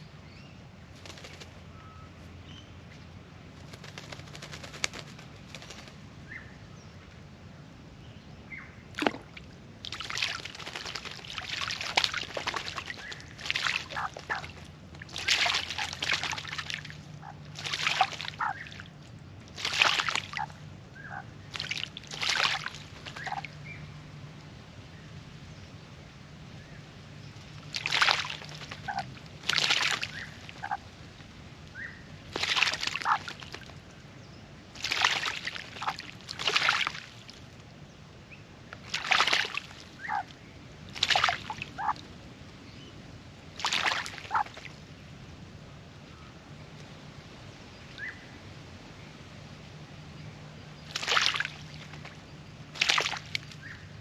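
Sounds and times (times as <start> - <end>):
bird splashing in water: 3.6 - 6.0, 8.9 - 20.6, 21.4 - 23.6, 27.5 - 31.1, 32.2 - 33.9, 34.7 - 37.6, 38.8 - 42.1, 43.5 - 44.9, 50.8 - 53.8.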